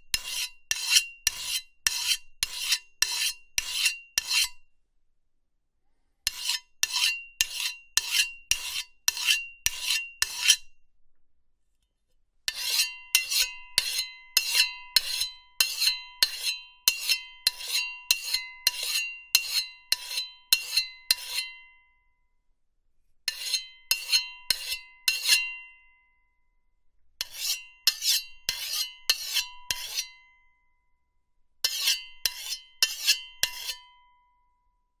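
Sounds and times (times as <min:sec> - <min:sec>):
knife sharpening strokes: 0:00.1 - 0:04.6, 0:06.2 - 0:10.7, 0:12.5 - 0:21.5, 0:23.3 - 0:25.5, 0:27.2 - 0:30.2, 0:31.6 - 0:33.9.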